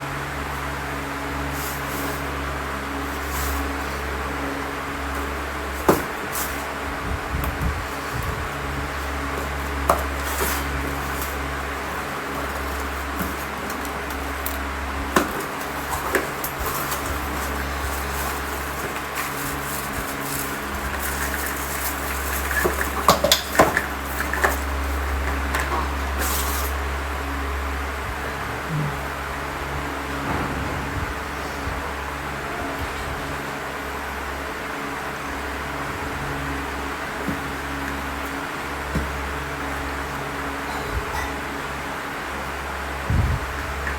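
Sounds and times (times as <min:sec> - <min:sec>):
steady low hum: 0:00.0 - 0:43.9
packages bumping and rustling: 0:00.2 - 0:28.3, 0:34.9 - 0:41.5.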